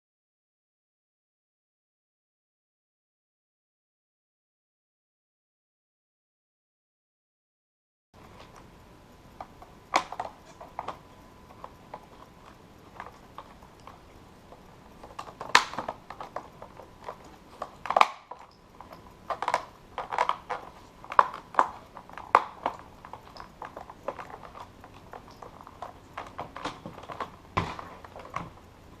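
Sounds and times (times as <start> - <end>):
plastic keyboard parts clicking: 9.4 - 29.0.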